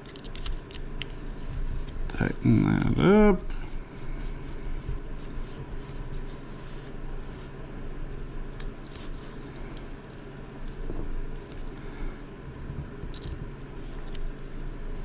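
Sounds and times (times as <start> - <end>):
metal parts clicking: 0.0 - 1.1, 13.1 - 13.4
steady low hum: 0.0 - 15.0.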